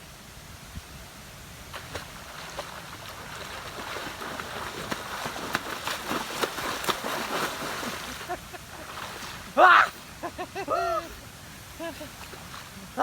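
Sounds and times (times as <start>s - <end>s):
water sloshing and splashing: 1.7s - 10.2s, 11.4s - 13.0s.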